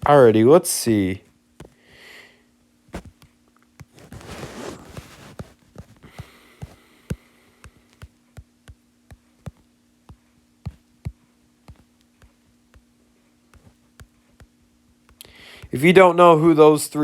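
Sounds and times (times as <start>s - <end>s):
low electrical hum: 0.0s - 17.0s
fingertips tapping touchscreen: 3.0s - 16.0s.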